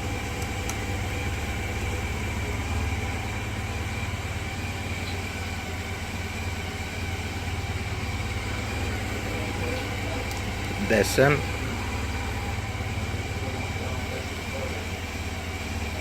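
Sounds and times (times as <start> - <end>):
motorcycle engine idling: 0.0 - 16.0.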